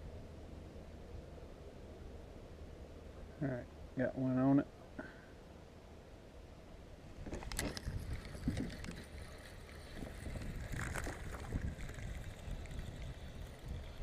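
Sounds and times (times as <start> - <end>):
wind rumbling on microphone: 6.9 - 14.0.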